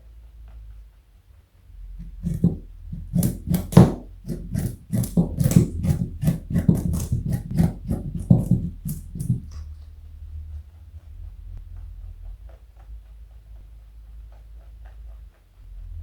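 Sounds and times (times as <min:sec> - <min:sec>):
rabbit crunching a carrot: 0:02.0 - 0:09.6.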